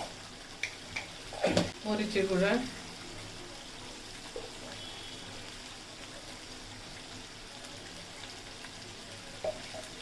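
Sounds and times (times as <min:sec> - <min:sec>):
spices sizzling in hot oil: 0:00.0 - 0:10.0.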